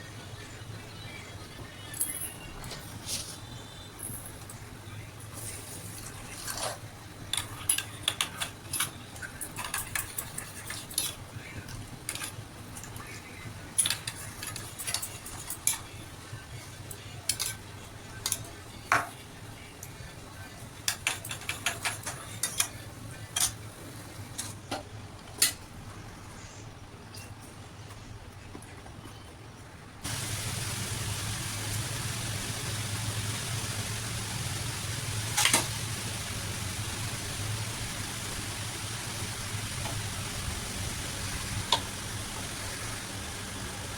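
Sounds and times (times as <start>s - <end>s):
utensils clinking against dishes: 1.8s - 3.3s, 5.4s - 16.0s, 16.9s - 19.2s, 20.8s - 23.6s
low steady hum: 22.1s - 43.9s.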